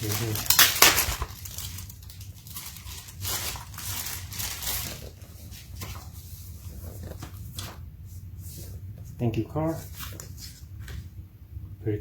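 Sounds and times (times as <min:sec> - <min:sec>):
packaging being torn open: 0:00.0 - 0:05.2
steady low hum: 0:00.0 - 0:12.0.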